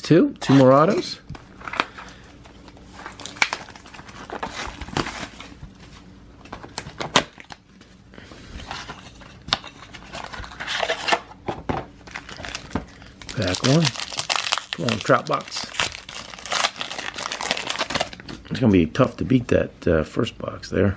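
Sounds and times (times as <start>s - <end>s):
plastic wrapping crinkling and tearing: 0.5s - 5.6s, 12.1s - 18.3s.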